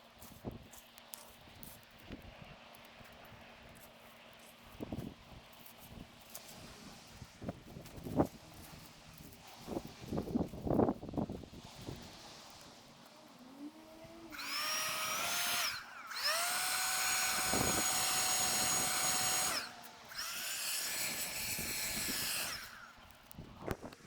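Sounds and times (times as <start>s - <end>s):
small electric motor whining: 4.7s - 24.0s
hiss: 5.7s - 24.0s.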